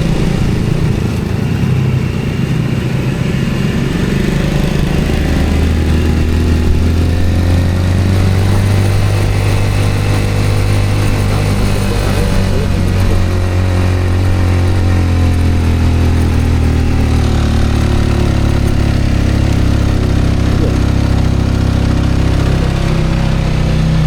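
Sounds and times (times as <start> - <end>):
road and wind noise: 0.0 - 24.0
vehicle engine running: 0.0 - 24.0.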